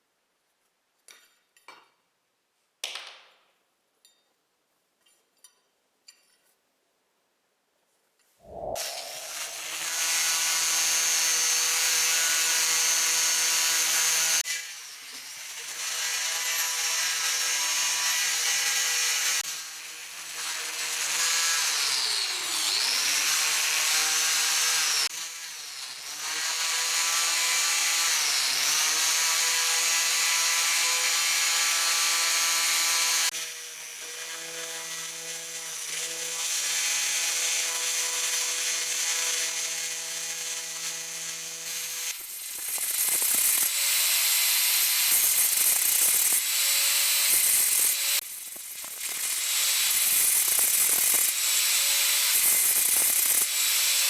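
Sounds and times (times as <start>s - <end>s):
power tool grinding: 40.8s - 54.0s.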